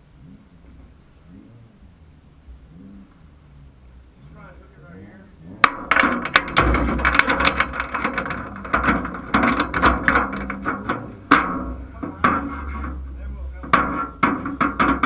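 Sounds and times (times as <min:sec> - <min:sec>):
steady low rumble: 0:00.0 - 0:15.0
clattering knocks and rattles: 0:05.5 - 0:15.0.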